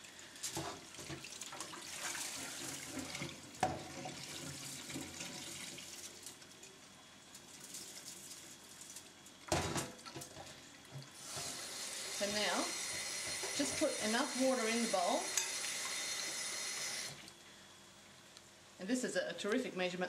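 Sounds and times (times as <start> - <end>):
tap water running into bowl: 0.9 - 6.4, 10.0 - 17.2.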